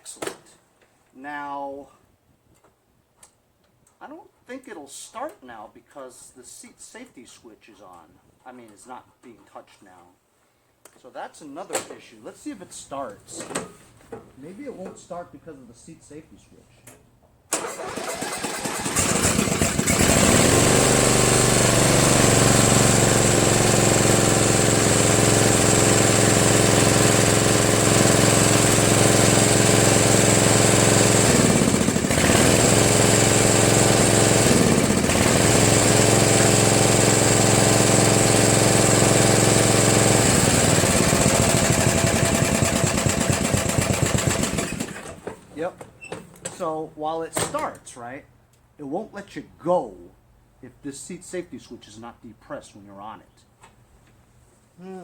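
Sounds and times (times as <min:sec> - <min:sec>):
lawn tractor engine running: 0:17.5 - 0:46.4.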